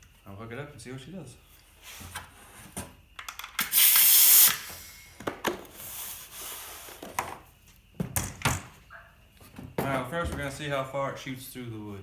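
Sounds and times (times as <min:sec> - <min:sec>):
compressed air hissing: 0:03.7 - 0:05.2
knocks and clunks of tool handling: 0:07.0 - 0:10.6.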